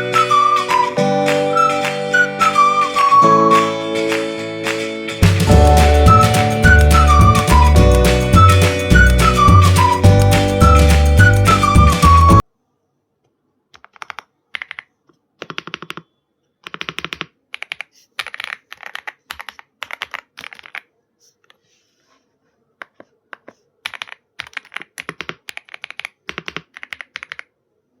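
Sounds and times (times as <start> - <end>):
mechanical keyboard typing: 13.7 - 20.9, 23.4 - 27.5.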